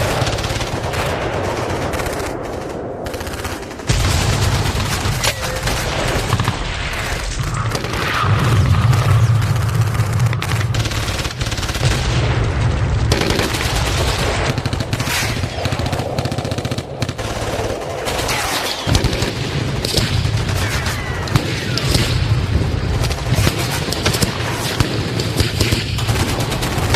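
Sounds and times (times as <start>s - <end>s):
gunshots: 0.0s - 26.9s
machine-gun fire: 0.0s - 26.9s
low rumble of booms: 11.8s - 14.9s.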